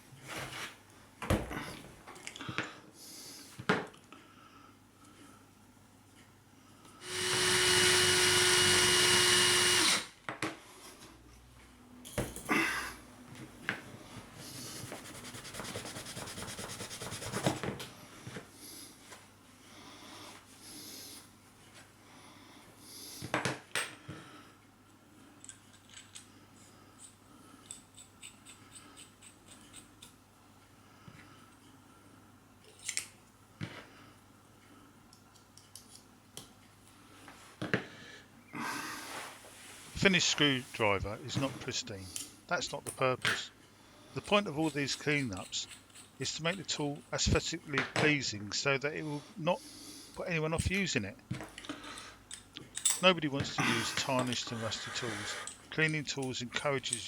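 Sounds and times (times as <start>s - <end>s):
cordless drill spinning wire brush: 7.0s - 10.1s
rubbing and scrubbing: 14.6s - 17.7s
small clicks from handling parts: 24.9s - 26.3s, 32.6s - 33.4s, 34.6s - 36.8s.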